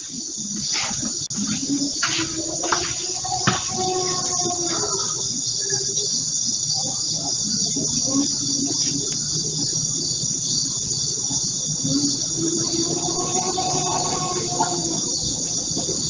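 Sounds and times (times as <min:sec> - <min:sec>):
crickets trilling: 0:00.0 - 0:16.0
low murmur: 0:00.8 - 0:16.0
moaning tone: 0:02.2 - 0:05.3, 0:11.8 - 0:16.0.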